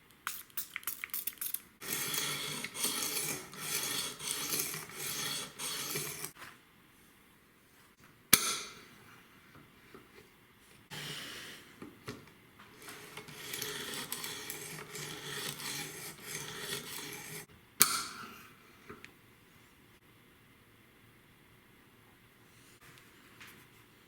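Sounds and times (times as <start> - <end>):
knife scraping on sharpener: 1.8 - 6.4, 10.9 - 11.7, 12.8 - 17.5.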